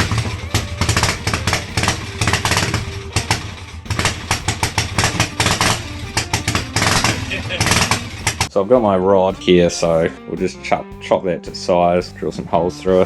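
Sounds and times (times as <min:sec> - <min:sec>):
scooter engine running: 0:00.0 - 0:08.5.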